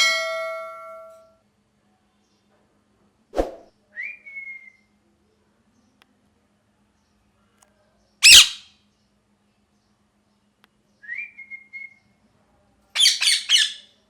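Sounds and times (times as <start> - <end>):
parrot squawking: 8.2 - 8.6, 13.0 - 13.9.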